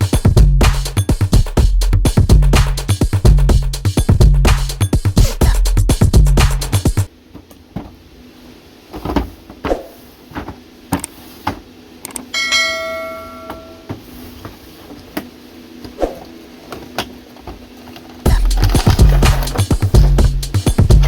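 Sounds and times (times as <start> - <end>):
bell-like metallic ring: 12.3 - 13.9.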